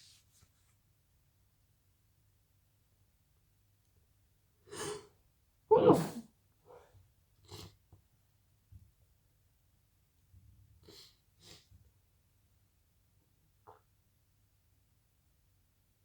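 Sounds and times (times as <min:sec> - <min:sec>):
person sniffing: 0:04.7 - 0:05.1, 0:05.7 - 0:06.8, 0:10.9 - 0:11.7
person sneezing: 0:05.7 - 0:06.2.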